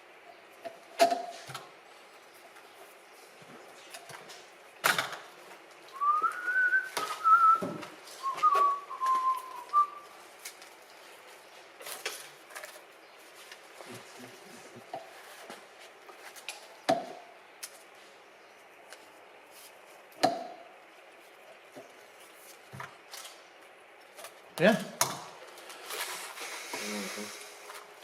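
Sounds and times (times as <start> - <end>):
person whistling: 5.9 - 10.1.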